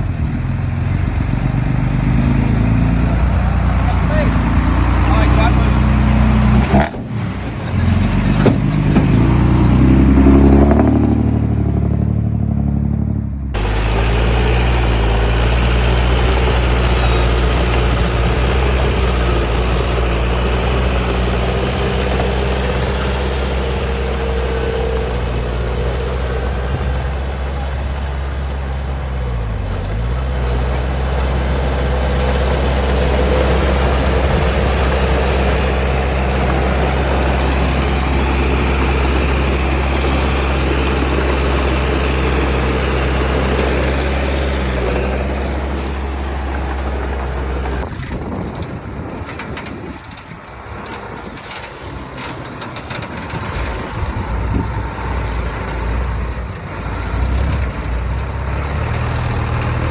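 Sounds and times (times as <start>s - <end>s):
heavy diesel engine running: 0.0s - 59.9s
constant broad noise: 13.5s - 59.9s.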